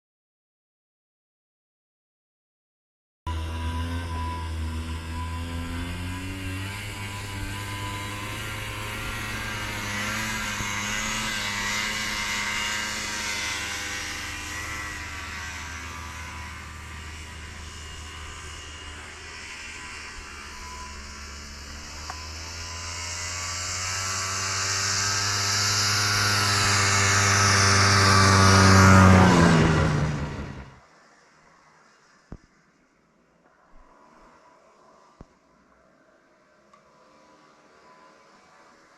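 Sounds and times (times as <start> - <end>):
snowmobile engine passing: 3.3 - 30.8.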